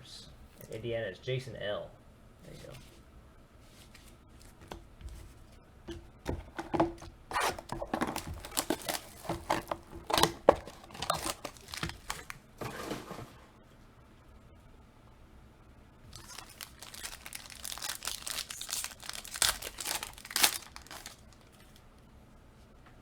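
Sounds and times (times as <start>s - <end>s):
wrapper tearing and crinkling: 7.3s - 12.4s, 16.1s - 21.8s.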